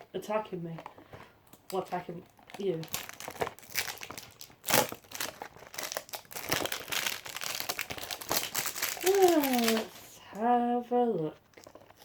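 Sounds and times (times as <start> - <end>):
toy packaging crinkling: 0.8 - 10.2.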